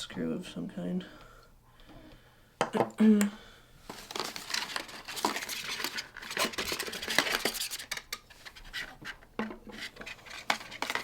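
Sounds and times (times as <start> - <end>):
plastic parts clicking and scraping: 3.9 - 11.0.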